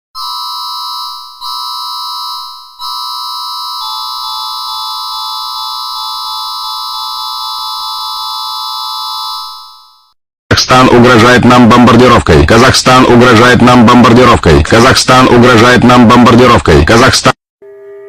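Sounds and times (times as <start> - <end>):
electronic alarm tone: 0.2 - 10.2, 17.6 - 18.0.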